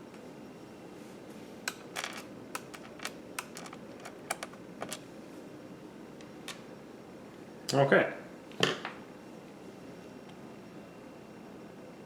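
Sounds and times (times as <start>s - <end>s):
small parts clicking and tapping: 1.7s - 5.0s.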